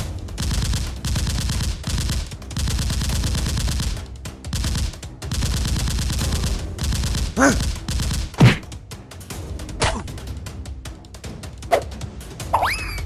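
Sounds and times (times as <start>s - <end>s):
rapid automatic gunfire: 0.0s - 8.8s.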